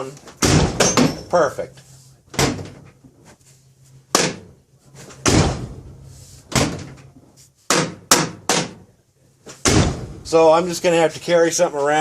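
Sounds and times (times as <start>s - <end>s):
steel truck door slamming: 0.4s - 1.4s, 5.2s - 5.9s, 6.5s - 7.1s, 9.6s - 10.2s.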